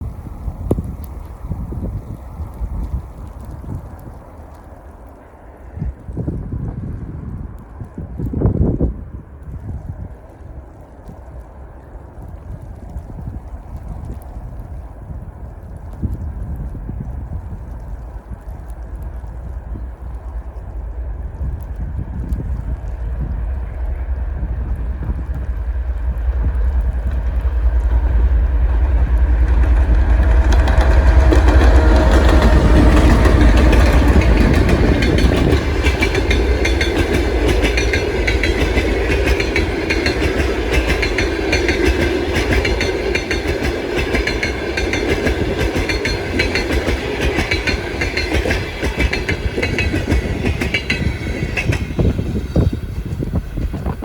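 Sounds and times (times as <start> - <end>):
diesel locomotive rumble: 16.2 - 54.0
train wheels clacking over rail joints: 26.8 - 54.0.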